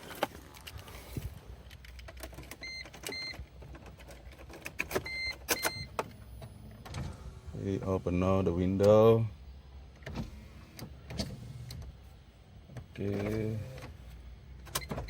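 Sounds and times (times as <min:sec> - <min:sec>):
car controls clicking: 0:08.6 - 0:09.2.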